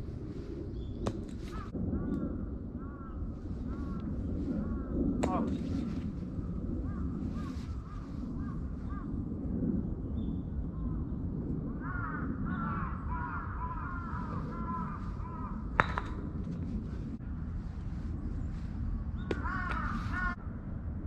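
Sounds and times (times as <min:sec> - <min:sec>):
low outdoor rumble: 0:00.0 - 0:21.0
crows cawing: 0:01.5 - 0:09.2, 0:11.8 - 0:16.2, 0:19.2 - 0:20.4.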